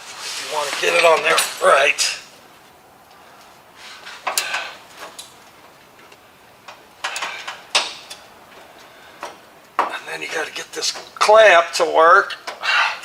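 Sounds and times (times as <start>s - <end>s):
sheet metal clicks and knocks: 6.6s - 8.2s.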